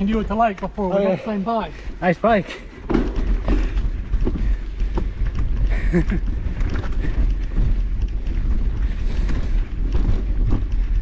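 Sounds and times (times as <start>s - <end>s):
wind rumble on microphone: 2.9s - 11.0s.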